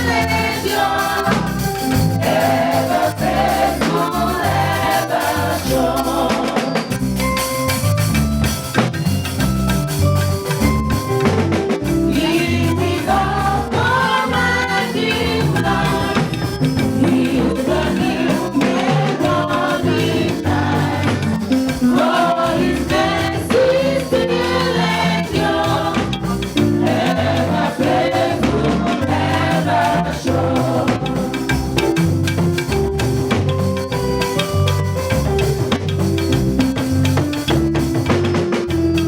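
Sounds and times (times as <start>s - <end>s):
church choir singing a hymn: 0.0s - 7.0s, 12.1s - 31.8s
instrumental accompaniment: 0.0s - 39.0s.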